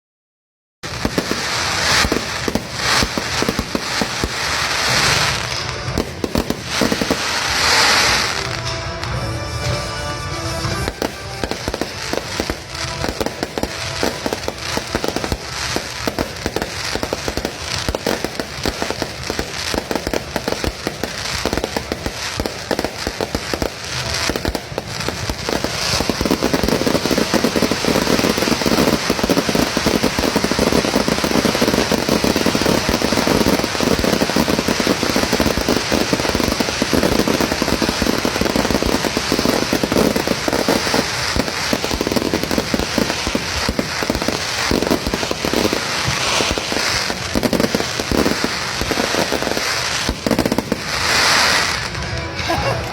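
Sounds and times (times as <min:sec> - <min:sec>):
fireworks crackling pops: 0:00.8 - 0:52.9.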